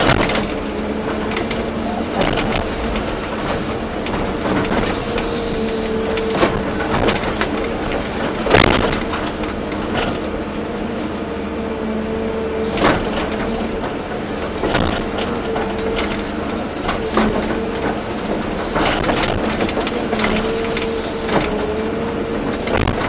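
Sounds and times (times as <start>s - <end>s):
sharp knocks: 0.0s - 10.3s, 14.6s - 16.2s
excavator engine and hydraulics whine: 0.0s - 23.0s.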